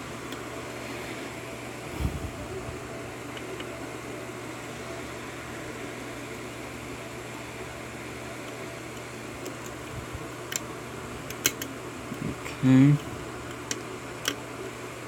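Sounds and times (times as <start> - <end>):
electrical hum and hiss: 0.0 - 15.0
lock pick clicks: 11.3 - 11.7.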